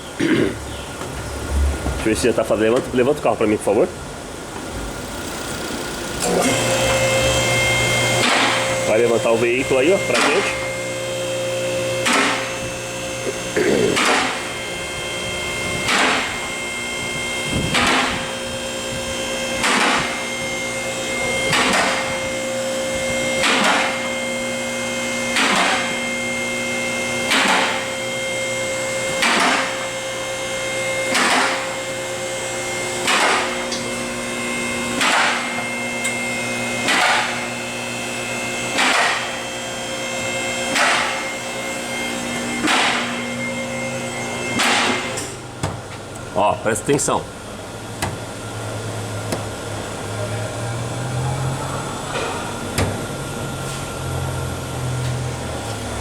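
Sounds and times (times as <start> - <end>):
electric motor humming: 4.9 - 25.3
loud clack of vehicle lift: 8.2 - 8.8, 12.0 - 12.6, 14.0 - 14.5, 15.8 - 16.4, 17.7 - 18.3, 19.6 - 20.2, 21.5 - 22.1, 23.4 - 24.0, 25.3 - 25.9, 27.3 - 27.8, 29.1 - 29.8, 31.1 - 31.7, 33.0 - 33.9, 35.0 - 35.5, 36.8 - 37.4, 38.7 - 39.3, 40.7 - 41.2, 42.6 - 43.2, 44.5 - 46.2.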